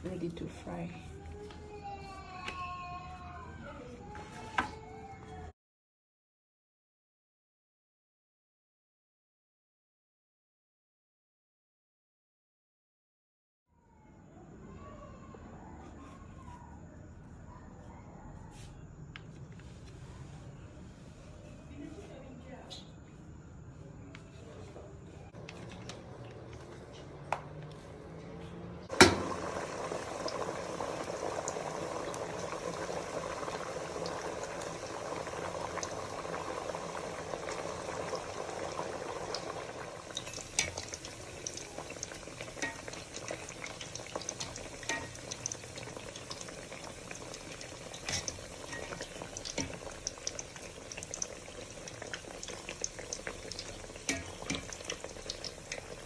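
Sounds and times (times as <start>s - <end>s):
pancakes sizzling in a pan: 28.9s - 56.0s.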